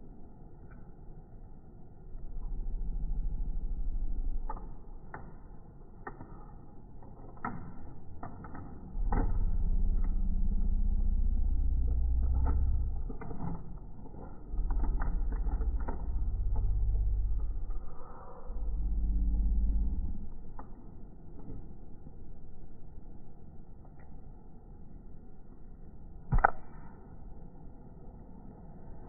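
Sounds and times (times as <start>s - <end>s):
deep handling rumble: 8.9s - 23.1s.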